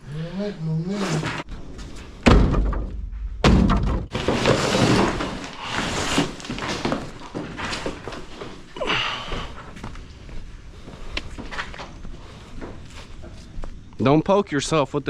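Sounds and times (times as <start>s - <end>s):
debris scraping and rattling: 1.1s - 8.7s
heavy debris thuds: 2.1s - 8.2s.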